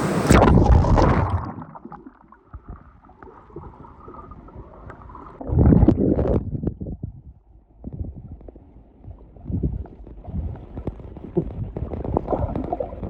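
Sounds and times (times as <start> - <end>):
water splashing: 0.0 - 6.0
muffled underwater rumble: 0.0 - 13.0.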